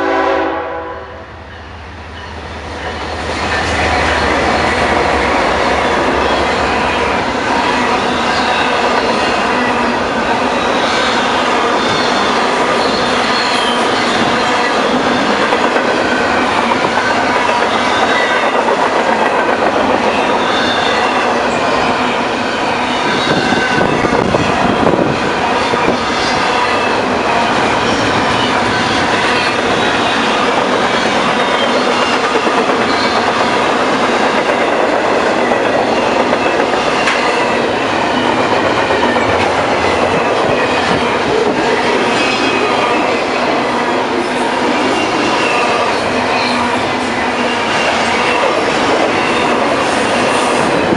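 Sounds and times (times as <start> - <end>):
train wheels rumbling on rails: 0.0 - 50.9
high squeal from wheels: 2.2 - 50.9
clickety-clack over rail joints: 8.0 - 9.7, 11.9 - 21.3, 28.4 - 43.2.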